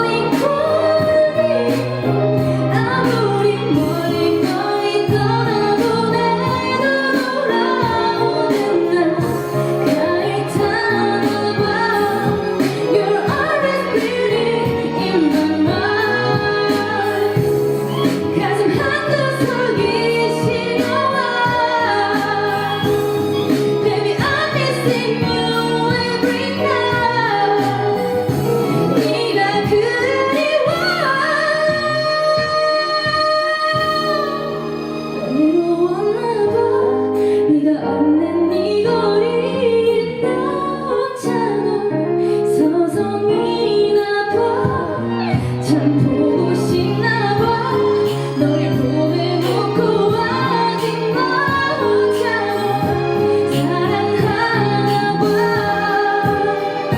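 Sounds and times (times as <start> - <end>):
instrumental accompaniment: 0.0 - 56.9
woman singing pop ballad: 0.0 - 56.9.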